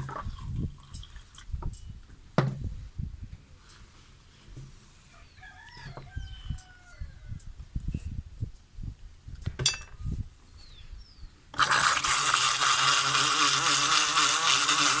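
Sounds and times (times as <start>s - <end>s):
blender motor whirring buzz: 11.6s - 15.0s.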